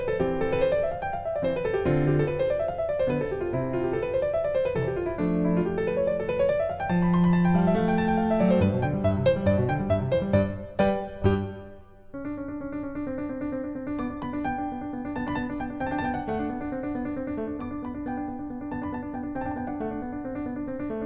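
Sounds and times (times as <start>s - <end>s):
piano arpeggios: 0.0s - 21.0s.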